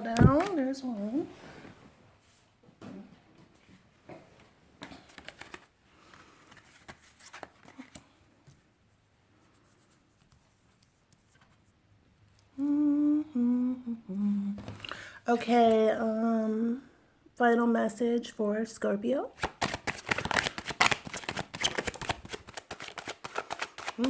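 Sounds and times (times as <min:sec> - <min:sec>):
cards rustling and clicking: 0:04.8 - 0:08.6, 0:19.4 - 0:24.0
woman humming a tune: 0:12.5 - 0:14.7.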